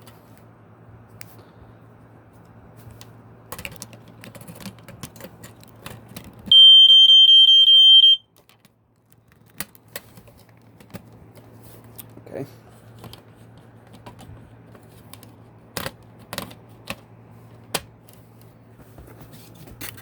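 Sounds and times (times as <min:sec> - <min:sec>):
smoke alarm beep: 0:06.5 - 0:08.2.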